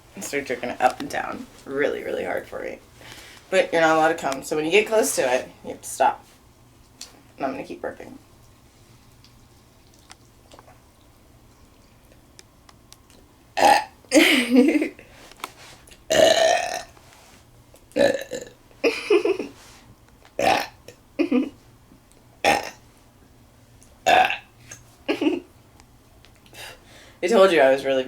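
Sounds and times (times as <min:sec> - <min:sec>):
woman belching: 0:13.6 - 0:14.4, 0:16.1 - 0:16.9, 0:18.0 - 0:19.1, 0:20.4 - 0:21.5, 0:22.4 - 0:22.8, 0:24.1 - 0:24.4.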